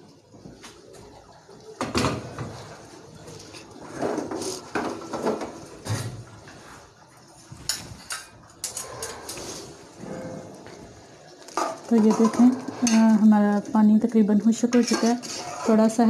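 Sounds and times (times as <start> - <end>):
metal pots and utensils clattering: 1.8 - 6.5, 7.5 - 16.0.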